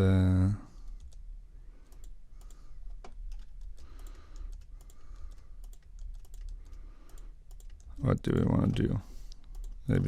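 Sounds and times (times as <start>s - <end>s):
low steady hum: 0.0s - 10.0s
typing on a keyboard: 1.9s - 8.0s.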